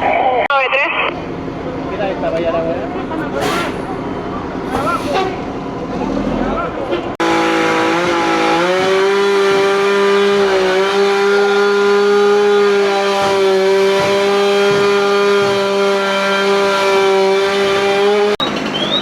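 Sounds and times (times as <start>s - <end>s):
small engine at high revs: 7.2s - 19.0s.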